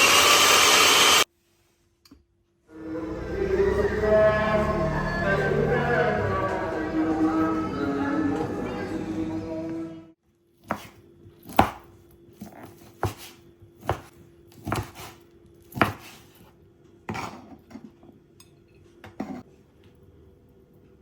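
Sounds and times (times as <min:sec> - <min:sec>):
knife chopping on cutting board: 0:10.6 - 0:16.3.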